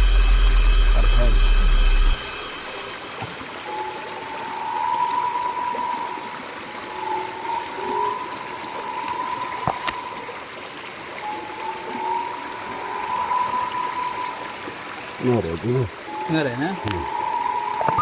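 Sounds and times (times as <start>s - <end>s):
steady high-pitched tone: 0.0s - 3.0s
water running and trickling: 0.0s - 18.0s.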